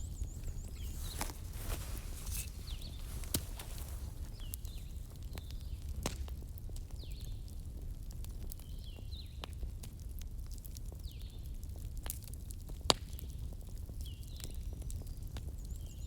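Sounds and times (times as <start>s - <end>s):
wood fire crackling and popping: 0.0s - 11.2s.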